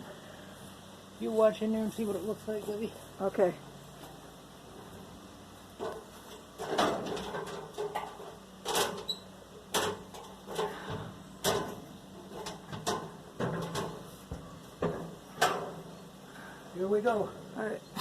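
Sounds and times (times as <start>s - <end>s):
sharp knocks and clunks: 5.8s - 9.1s, 9.7s - 16.0s.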